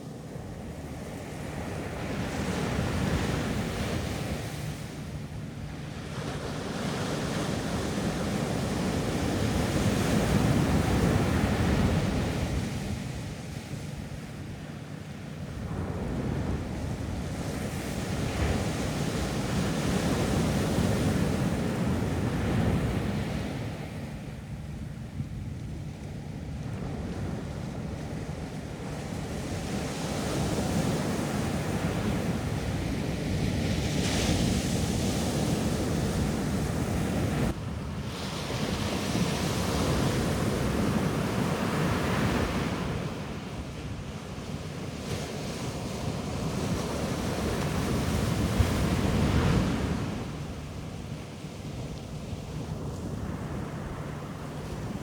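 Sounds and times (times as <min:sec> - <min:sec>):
ocean surf breaking on beach: 0:29.1 - 0:55.0.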